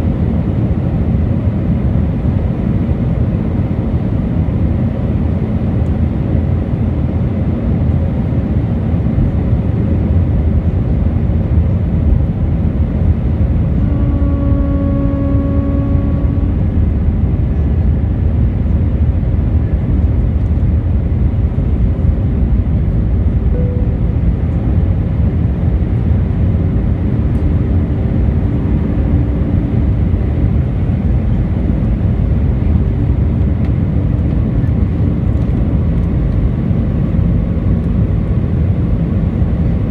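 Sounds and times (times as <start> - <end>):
airplane cabin rumble: 0.0 - 39.9
humming tone with overtones: 13.0 - 19.0, 21.5 - 39.9.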